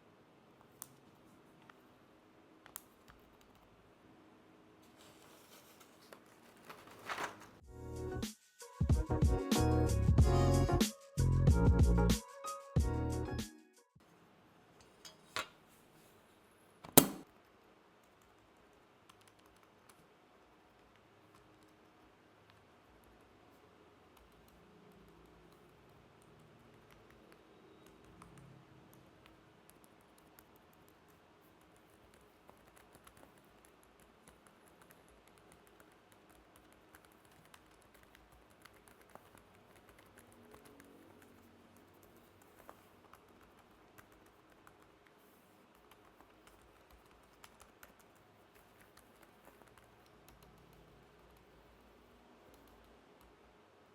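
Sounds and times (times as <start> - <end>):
soft keyboard keystrokes: 2.6 - 3.8, 18.0 - 23.3, 24.1 - 51.8, 52.4 - 53.4.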